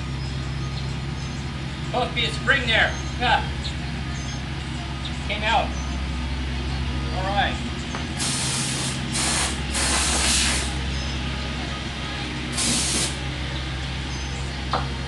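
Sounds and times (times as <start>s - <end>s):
steady low hum: 0.0s - 15.0s
compressed air blow gun hissing: 8.2s - 10.8s, 12.5s - 13.2s.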